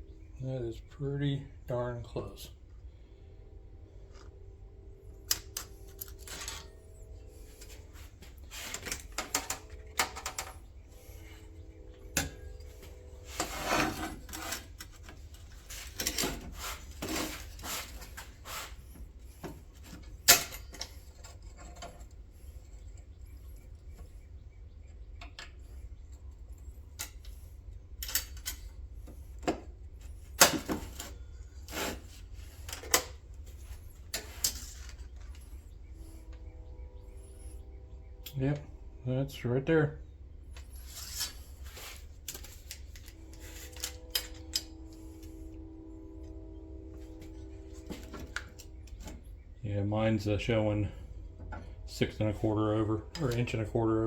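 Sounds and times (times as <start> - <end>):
metal parts clicking and scraping: 5.2 - 23.7, 26.6 - 36.4, 40.5 - 45.6.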